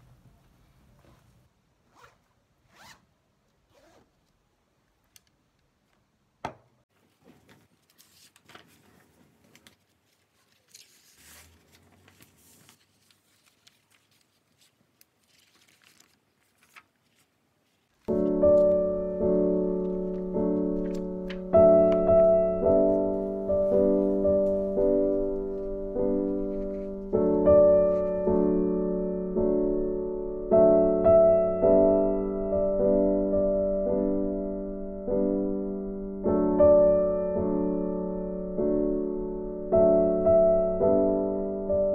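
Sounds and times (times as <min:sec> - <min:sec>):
soft electric piano chords: 0:18.1 - 0:41.9.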